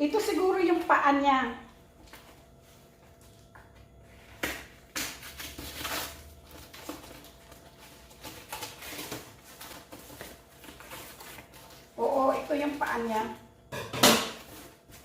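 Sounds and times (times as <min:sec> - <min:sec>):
rustling packaging: 0:05.2 - 0:12.8.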